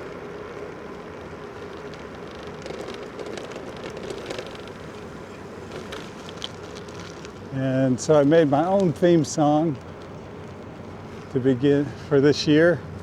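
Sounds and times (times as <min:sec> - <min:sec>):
tyre noise: 0:00.0 - 0:10.7
faint electric motor whine: 0:00.0 - 0:13.0
light ticks: 0:08.7 - 0:09.0.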